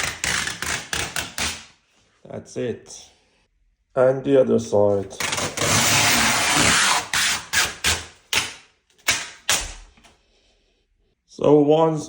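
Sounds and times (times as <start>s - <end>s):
packing tape being peeled: 0.0s - 1.7s, 5.1s - 10.0s.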